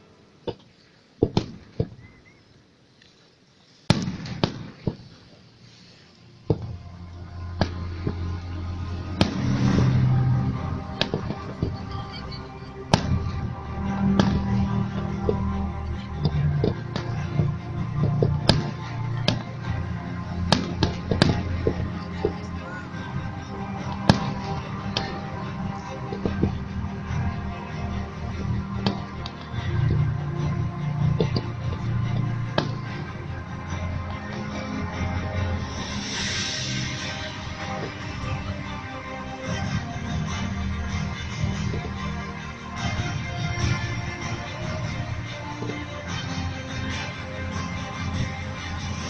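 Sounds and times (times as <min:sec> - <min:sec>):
fireworks bangs: 0:03.9 - 0:27.4
steady music: 0:03.9 - 0:49.0.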